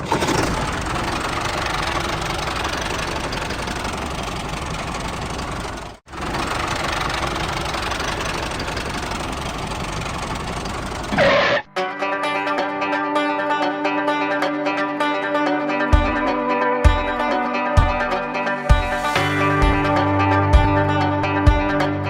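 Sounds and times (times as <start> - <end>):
engine rumbling: 0.0 - 11.7, 18.7 - 22.0.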